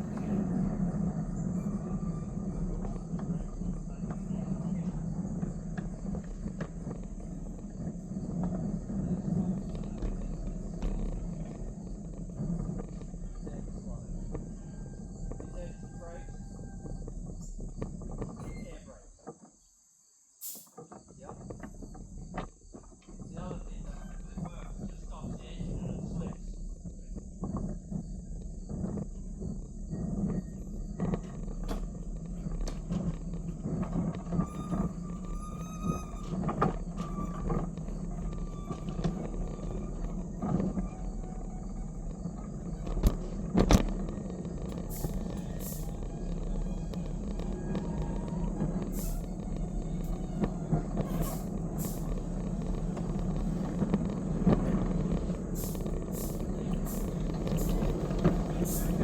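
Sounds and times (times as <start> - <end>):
train engine rumble: 0.0 - 19.3, 21.1 - 59.0
train clanks and knocks: 0.0 - 19.6, 20.7 - 59.0
high squeal: 18.4 - 19.0, 33.2 - 44.0, 44.7 - 59.0.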